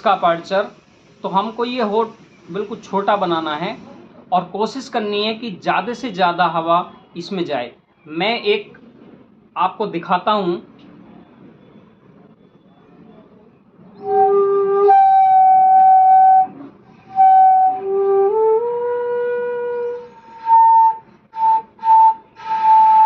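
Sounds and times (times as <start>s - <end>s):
bamboo flute with breathy hiss: 0.0s - 4.0s, 14.0s - 23.0s.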